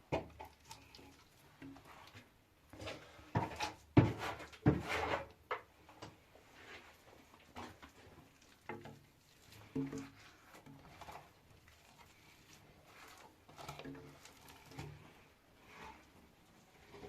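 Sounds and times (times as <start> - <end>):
objects knocking and scraping: 0.0 - 1.0, 1.6 - 11.4, 12.9 - 17.0.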